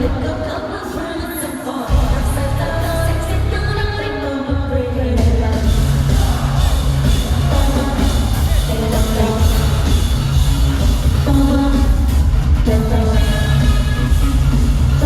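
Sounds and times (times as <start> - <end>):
person singing: 0.0 - 9.9
loud pop music over speakers: 0.0 - 15.0
heavy bass beat: 1.9 - 4.0, 5.2 - 15.0.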